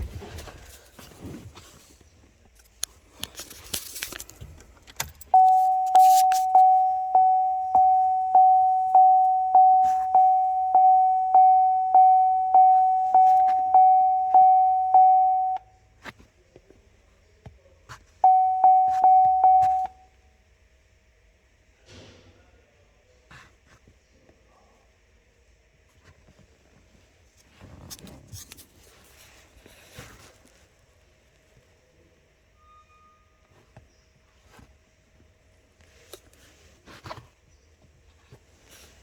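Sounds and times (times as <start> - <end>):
car warning chime dinging: 5.3 - 15.7, 18.2 - 20.0.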